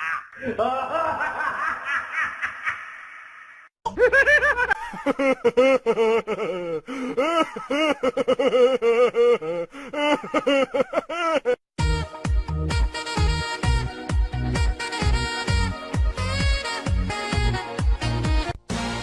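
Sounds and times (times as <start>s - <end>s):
person laughing or gasping: 0.0s - 3.0s, 3.9s - 11.6s
high-pitched laugh-like vocal notes: 0.0s - 11.5s.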